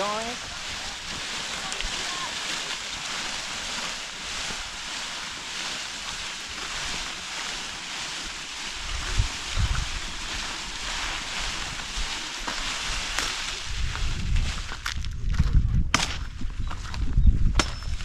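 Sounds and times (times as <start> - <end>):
wind blowing over microphone: 8.7 - 18.0.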